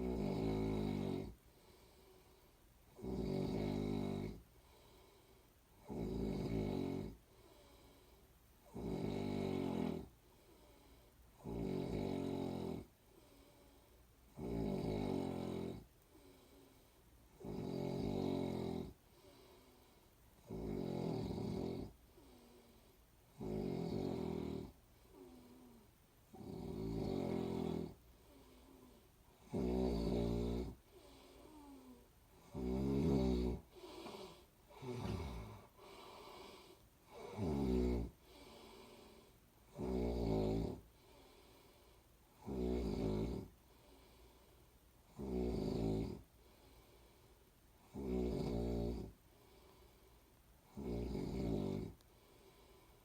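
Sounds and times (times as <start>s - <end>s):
person snoring: 0.0s - 2.1s, 2.9s - 5.1s, 5.8s - 7.9s, 8.6s - 10.1s, 11.4s - 13.7s, 14.3s - 16.6s, 17.3s - 19.7s, 20.4s - 41.6s, 42.3s - 43.5s, 45.1s - 46.2s, 47.8s - 49.2s, 50.7s - 52.8s
faint breathing: 1.3s - 2.9s, 4.4s - 5.8s, 7.2s - 8.5s, 10.2s - 11.4s, 13.0s - 14.2s, 16.0s - 17.4s, 19.0s - 20.4s, 22.0s - 23.2s, 24.8s - 26.0s, 27.9s - 29.4s, 30.7s - 32.4s, 33.5s - 37.4s, 38.0s - 39.5s, 40.8s - 42.3s, 43.4s - 44.9s, 46.2s - 47.6s, 49.1s - 50.4s, 51.9s - 53.0s.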